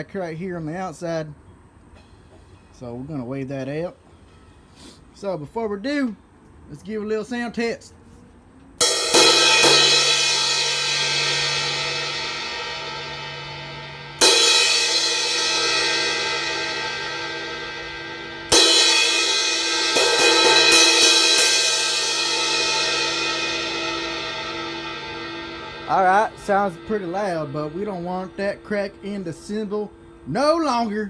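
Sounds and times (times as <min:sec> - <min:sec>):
crash cymbal ringing: 0:08.8 - 0:31.0
quick cymbal hits: 0:08.8 - 0:31.0.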